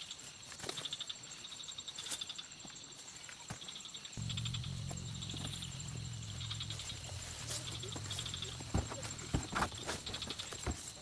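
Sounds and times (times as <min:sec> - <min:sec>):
insects chirping in trills: 0:00.0 - 0:11.0
low hum: 0:04.2 - 0:10.5.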